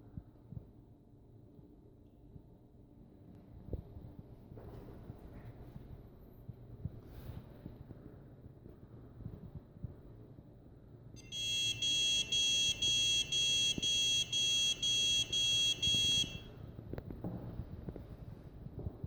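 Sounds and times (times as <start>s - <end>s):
short high beeps: 11.2s - 16.5s.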